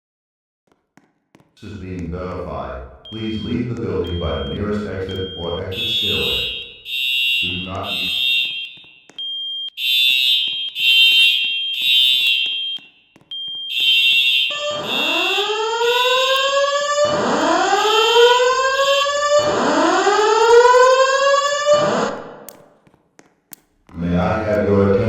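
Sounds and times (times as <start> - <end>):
short high-pitched beeping pulses: 3.1 - 9.4
rising whoop alarm sweeps: 14.5 - 22.2.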